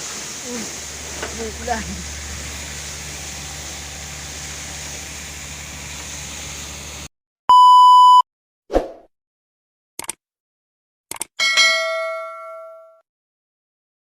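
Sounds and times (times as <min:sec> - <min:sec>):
air compressor rushing and humming: 0:00.0 - 0:07.1.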